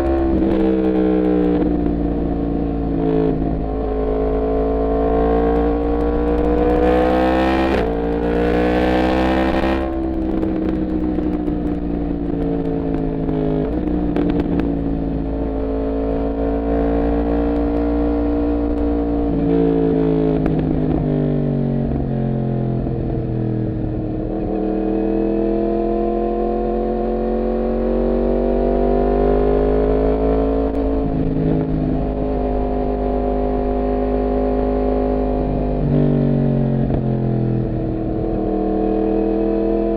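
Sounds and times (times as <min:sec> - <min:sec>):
motorcycle engine revving: 0:00.0 - 0:39.9
wind buffeting microphone: 0:05.4 - 0:24.4.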